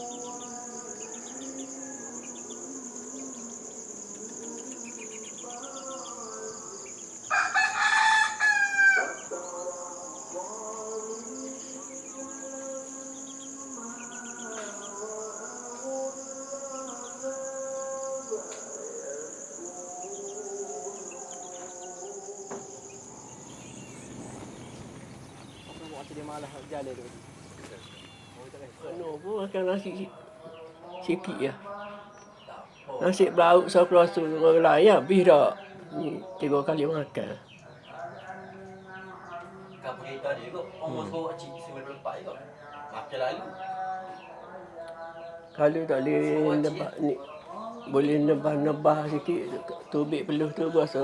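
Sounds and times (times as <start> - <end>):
rooster crowing: 0.0 - 3.8, 4.4 - 25.8
insects droning: 0.0 - 51.0
soft bird calls: 0.0 - 51.0.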